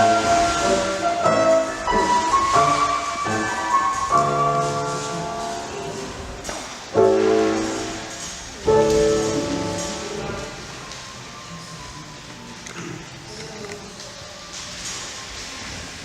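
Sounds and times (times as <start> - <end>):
piano playing slow chords: 0.0 - 11.9.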